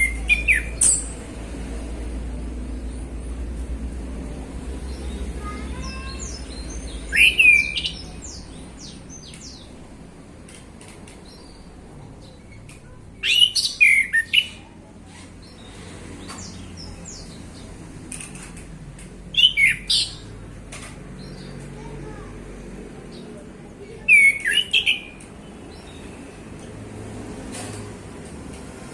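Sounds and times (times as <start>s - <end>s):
bird whistled song: 0.0s - 1.1s, 5.8s - 9.6s, 13.2s - 14.6s, 19.4s - 20.2s, 24.1s - 25.2s
low background rumble: 0.0s - 13.8s.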